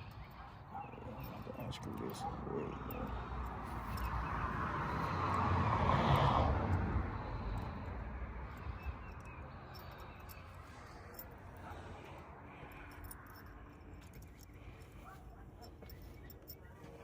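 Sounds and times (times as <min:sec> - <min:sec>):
vehicle passing by: 0:00.7 - 0:14.2.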